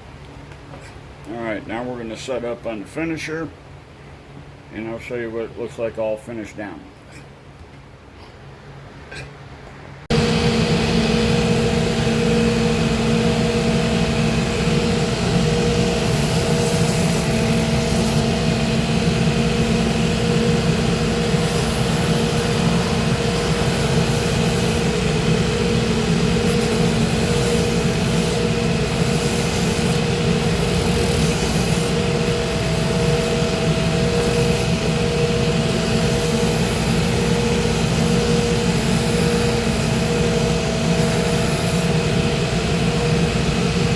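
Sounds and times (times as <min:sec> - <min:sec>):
finishing machine motor hum: 0:10.1 - 0:43.9
sole sanding hiss: 0:15.7 - 0:18.3, 0:21.2 - 0:25.6, 0:26.2 - 0:34.8.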